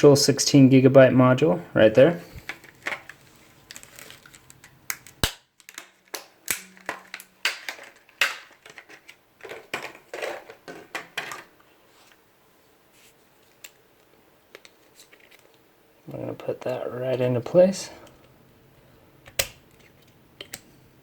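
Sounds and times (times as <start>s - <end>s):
clicks and clatters of parts: 2.4s - 11.6s.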